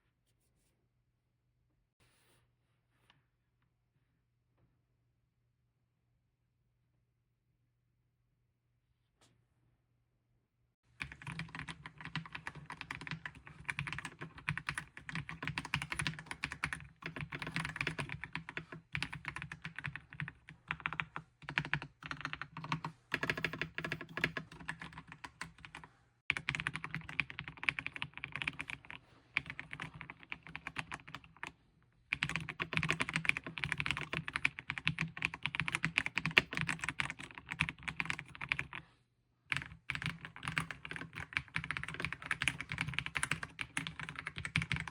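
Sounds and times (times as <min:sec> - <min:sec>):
mechanical keyboard typing: 0:11.0 - 0:31.5, 0:32.1 - 0:38.8, 0:39.5 - 0:44.9.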